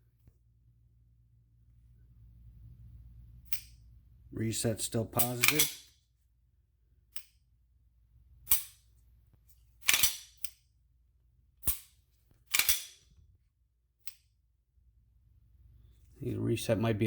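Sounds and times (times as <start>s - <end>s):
pistol trigger clicks: 9.8s - 10.6s, 12.5s - 13.0s.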